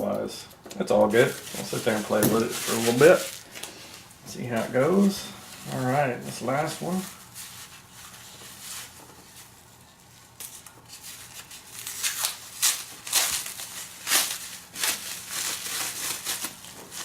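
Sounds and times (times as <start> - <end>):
packaging crinkling and tearing: 1.0 - 3.8, 10.3 - 17.0.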